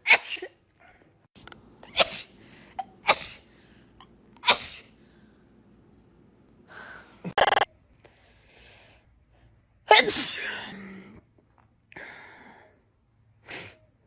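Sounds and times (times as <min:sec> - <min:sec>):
person sneezing: 0:00.0 - 0:00.5, 0:01.9 - 0:03.6, 0:04.4 - 0:05.0, 0:09.9 - 0:10.8.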